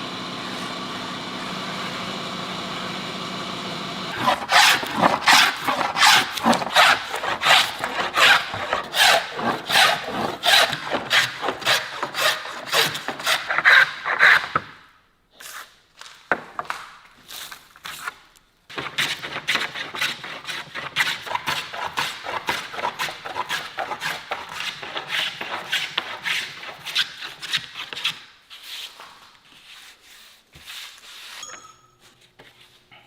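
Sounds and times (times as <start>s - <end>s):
wood being rubbed by hand: 4.1s - 14.6s, 18.8s - 31.4s.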